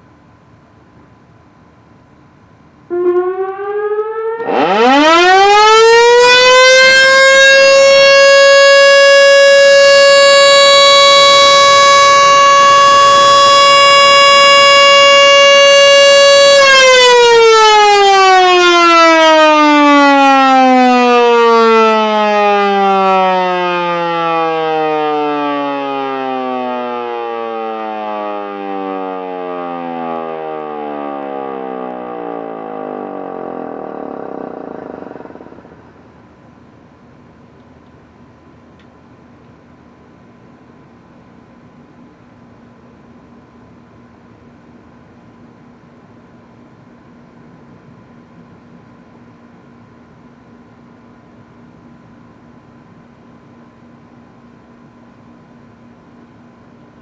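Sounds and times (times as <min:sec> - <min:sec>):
civil defense siren: 0:02.9 - 0:36.1.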